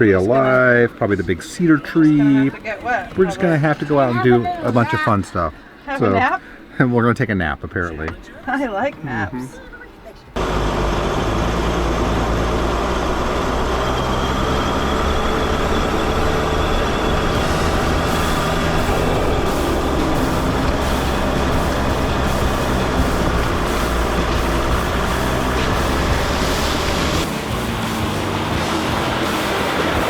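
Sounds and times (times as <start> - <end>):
van engine and road noise: 9.0 - 30.0.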